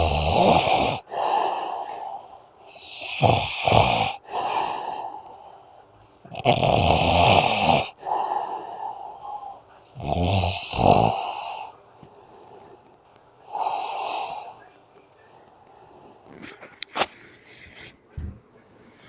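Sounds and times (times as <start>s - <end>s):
man snoring: 0.0s - 5.4s, 6.3s - 9.4s, 10.0s - 11.7s, 13.5s - 14.6s
soft breaths: 0.6s - 3.2s, 4.0s - 6.3s, 7.8s - 19.0s.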